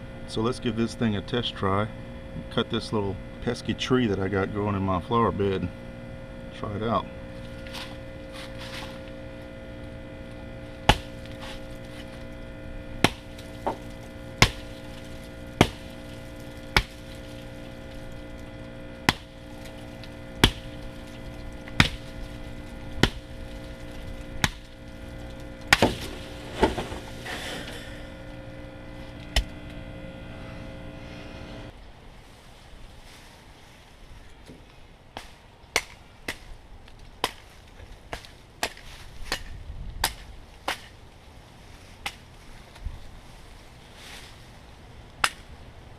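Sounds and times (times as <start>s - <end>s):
steady hum: 0.0s - 45.9s
wood splintering: 10.7s - 12.4s, 13.0s - 28.2s
hatchet chopping wood: 10.8s - 11.7s, 13.0s - 17.3s, 19.0s - 19.4s, 20.4s - 20.8s, 21.7s - 22.2s, 23.0s - 23.3s, 24.4s - 24.7s, 25.7s - 27.0s, 35.2s - 36.5s, 37.2s - 37.4s, 38.1s - 40.9s.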